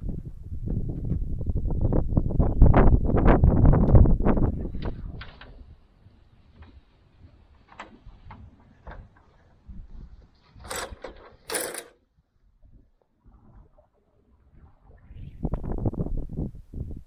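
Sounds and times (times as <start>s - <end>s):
hardware and wood clicking: 4.8s - 9.6s, 10.2s - 12.1s
scraping rattles: 10.4s - 12.0s.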